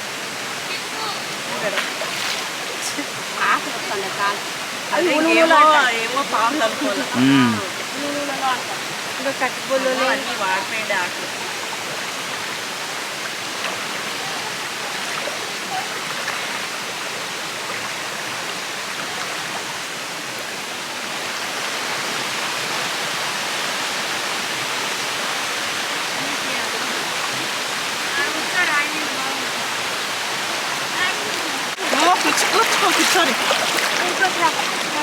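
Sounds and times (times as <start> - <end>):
water flowing over rocks: 0.0 - 35.0.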